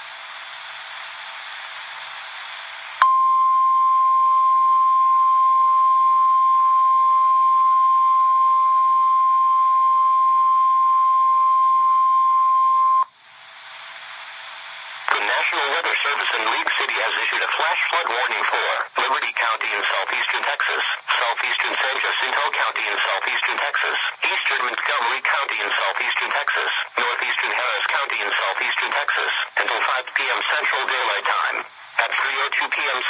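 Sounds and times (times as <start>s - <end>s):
loud steady alarm beep: 3.0s - 13.1s
radio hiss: 13.1s - 33.0s.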